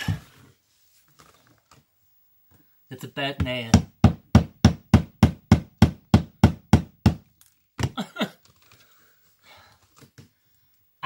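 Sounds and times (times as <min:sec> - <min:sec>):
hammer striking nail into wood: 0:03.7 - 0:07.3.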